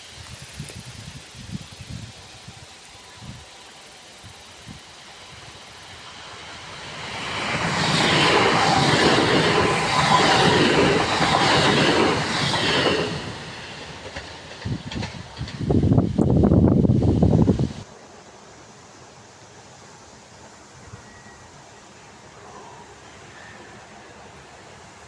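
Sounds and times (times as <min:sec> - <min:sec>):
train wheels clattering: 0:05.2 - 0:16.8.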